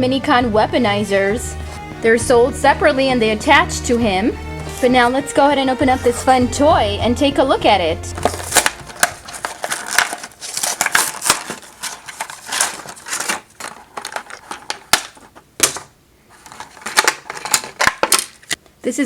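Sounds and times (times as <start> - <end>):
packaging being opened: 8.2 - 18.6.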